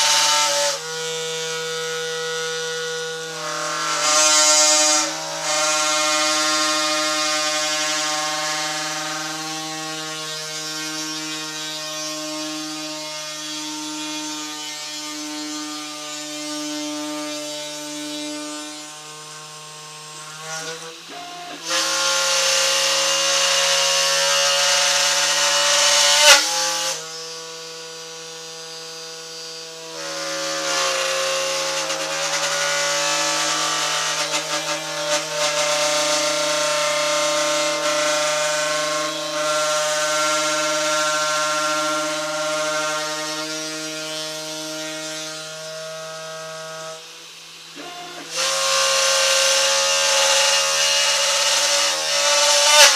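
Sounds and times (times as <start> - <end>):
drill bit boring into wood: 20.2 - 43.8, 45.5 - 52.9.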